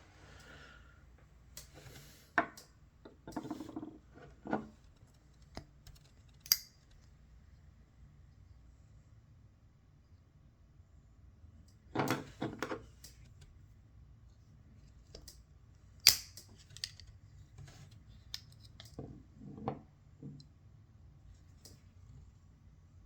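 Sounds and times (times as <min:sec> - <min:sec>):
sharp metallic click: 0:16.0 - 0:16.4.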